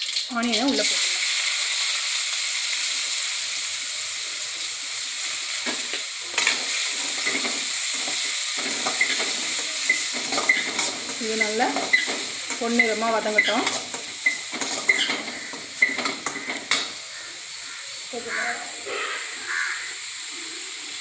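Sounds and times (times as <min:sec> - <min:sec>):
onions sizzling in hot oil: 0:00.0 - 0:21.0
spatula scraping a pan: 0:05.7 - 0:17.0.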